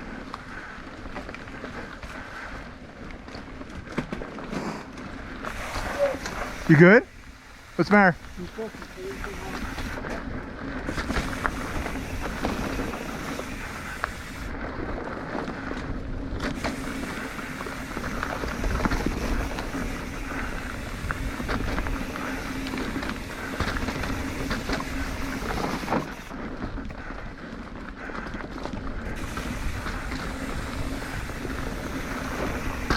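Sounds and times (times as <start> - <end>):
bike clicks and rattles: 0.0 - 32.9
bike tyres rolling over dirt: 0.0 - 32.9
wind noise on microphone: 8.3 - 32.9.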